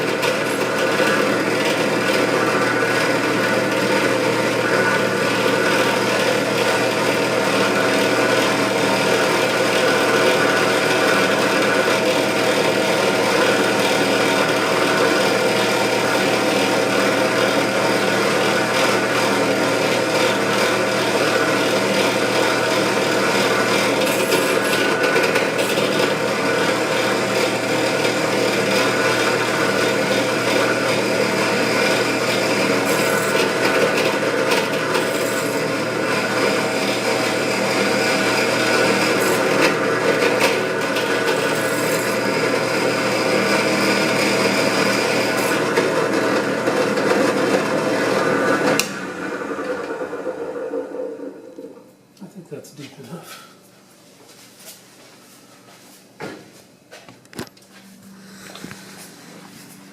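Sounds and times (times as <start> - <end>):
electric drill whining: 0.0 - 51.8, 57.3 - 59.4.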